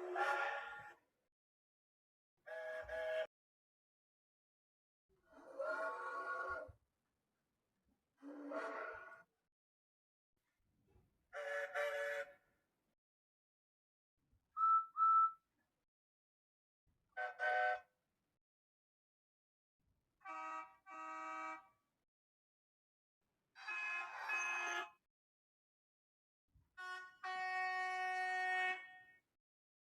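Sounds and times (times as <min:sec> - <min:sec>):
thin high train whistle: 0:14.6 - 0:15.4, 0:17.2 - 0:17.9
train horn toots: 0:20.2 - 0:21.7, 0:26.8 - 0:29.1.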